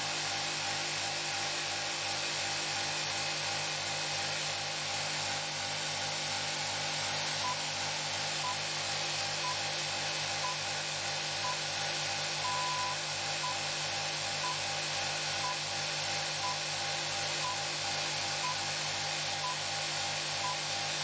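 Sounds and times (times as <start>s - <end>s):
short electronic beeps: 7.4s - 7.6s, 8.4s - 8.6s, 10.4s - 10.6s, 11.4s - 11.6s, 12.4s - 13.6s, 14.4s - 14.6s, 15.4s - 15.6s, 16.4s - 16.6s, 17.4s - 17.6s, 18.4s - 18.6s, 20.4s - 20.6s
low pulsing generator hum: 11.4s - 14.6s.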